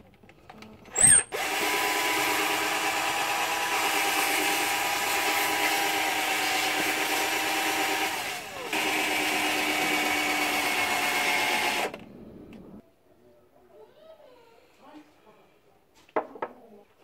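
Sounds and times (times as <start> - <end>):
power tool whining: 0.9 - 12.0.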